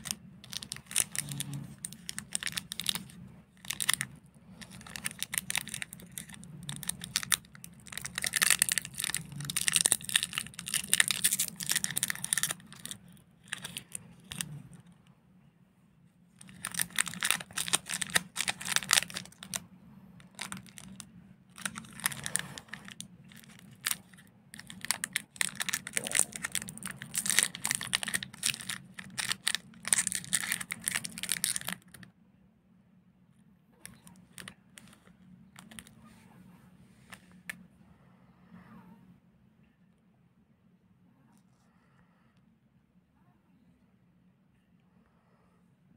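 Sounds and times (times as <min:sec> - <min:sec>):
plastic wrappers crinkling: 0:00.0 - 0:14.9, 0:16.4 - 0:19.6, 0:20.2 - 0:32.1, 0:33.8 - 0:36.0.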